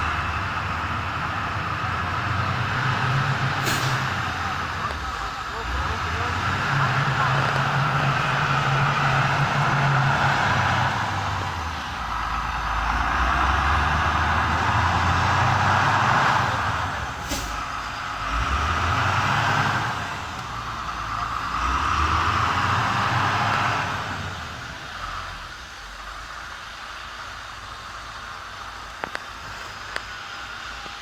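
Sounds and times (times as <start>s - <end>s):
hiss: 3.5s - 4.4s, 17.2s - 18.0s.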